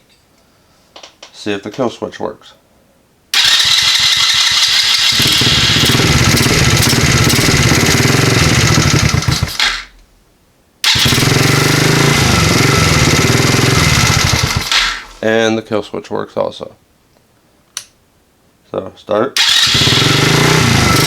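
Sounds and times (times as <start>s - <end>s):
atv engine running: 3.4s - 9.8s, 10.9s - 15.2s, 19.4s - 21.0s.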